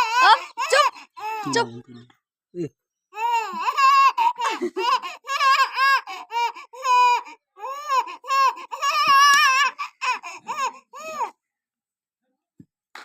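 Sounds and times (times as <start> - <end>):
child squealing and babbling: 0.0 - 1.6.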